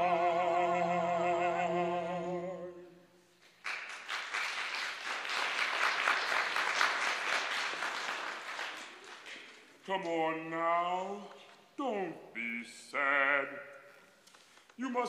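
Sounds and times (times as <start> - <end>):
audience applause: 3.6 - 9.7.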